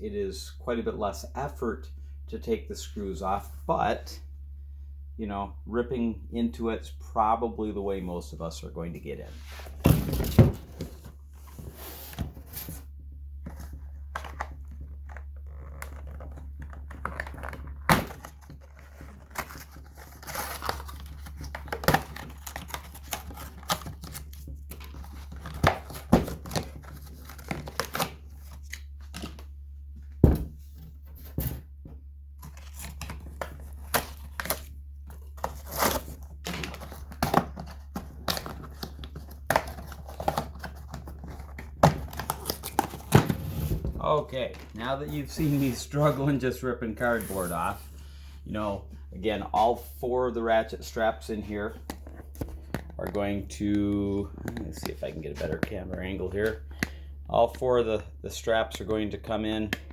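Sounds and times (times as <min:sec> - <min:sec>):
steady low hum: 0:00.0 - 0:59.9
cardboard tearing and crinkling: 0:16.9 - 0:29.4, 0:32.4 - 0:43.8.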